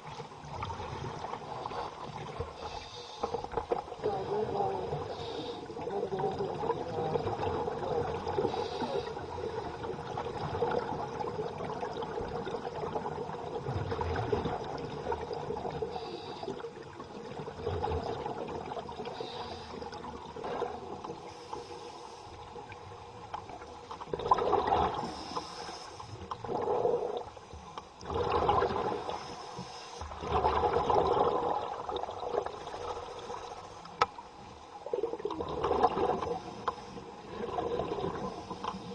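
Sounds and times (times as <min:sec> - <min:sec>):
diver breathing through regulator: 0:02.6 - 0:03.5, 0:05.0 - 0:05.8, 0:08.4 - 0:09.3, 0:15.8 - 0:16.7, 0:19.1 - 0:19.9, 0:25.0 - 0:26.2
exhaled bubbles surging: 0:05.7 - 0:16.0, 0:17.0 - 0:19.2, 0:24.0 - 0:25.2, 0:26.2 - 0:27.4, 0:28.0 - 0:29.3, 0:30.1 - 0:33.6, 0:34.8 - 0:36.5, 0:37.2 - 0:38.4.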